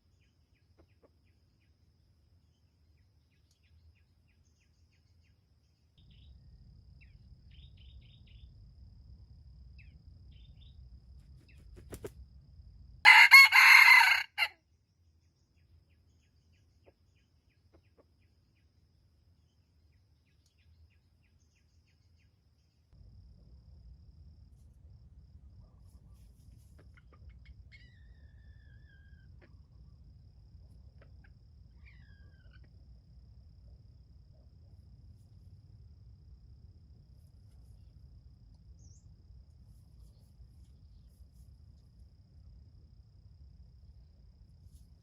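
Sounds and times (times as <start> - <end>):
faint low rumble: 2.1 - 13.1, 22.5 - 45.0
rooster crowing: 13.0 - 14.6.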